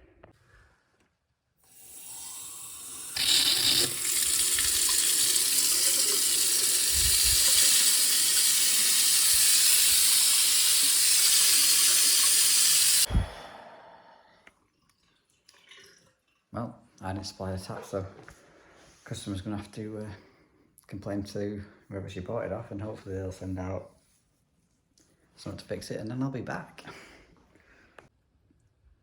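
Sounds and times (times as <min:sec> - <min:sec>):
tap water running into sink: 0:01.7 - 0:13.1.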